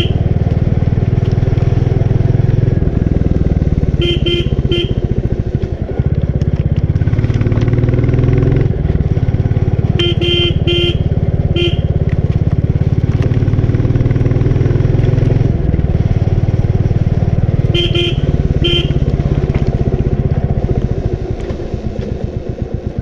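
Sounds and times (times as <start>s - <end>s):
horn toots: 0.0s - 0.7s, 3.7s - 5.5s, 9.5s - 12.2s, 16.6s - 20.0s
motorcycle engine running: 0.0s - 23.0s.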